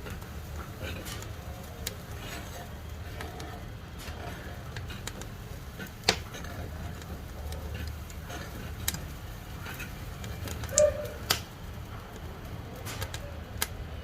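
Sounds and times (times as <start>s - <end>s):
low stove rumble: 0.0s - 14.0s
wood fire crackling: 0.0s - 14.0s.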